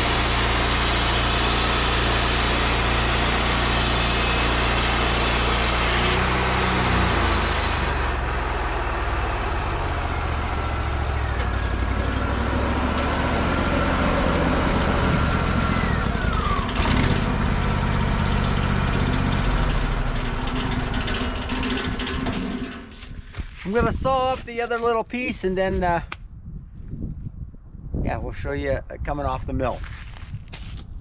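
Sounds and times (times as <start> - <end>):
bandsaw sawmill running: 0.0 - 23.2
short falling squeal: 5.7 - 8.5.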